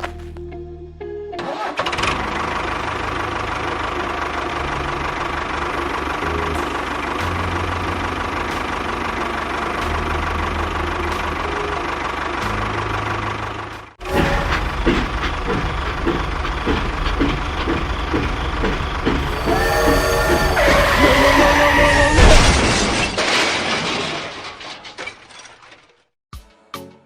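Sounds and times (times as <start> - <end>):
tractor engine running: 1.8 - 22.2.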